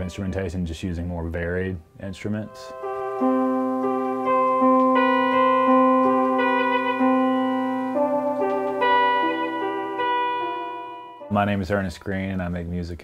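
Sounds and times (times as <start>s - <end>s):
keyboard playing sustained chords: 2.1s - 11.6s.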